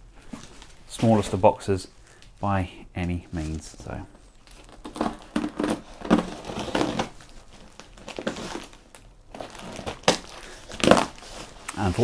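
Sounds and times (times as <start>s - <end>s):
packaging crinkling: 3.4s - 12.0s.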